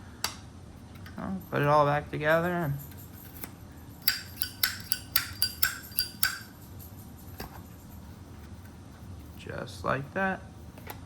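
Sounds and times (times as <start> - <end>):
lighter metallic clicks and clinks: 2.4 - 6.8.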